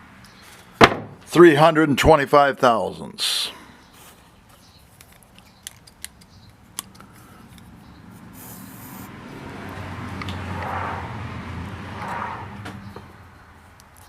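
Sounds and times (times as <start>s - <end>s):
sharp light metal clicks: 5.0s - 7.8s.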